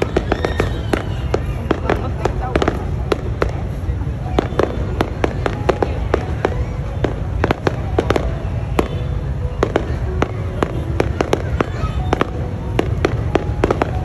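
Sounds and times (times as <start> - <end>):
fireworks bangs and cracks: 0.0 - 14.0.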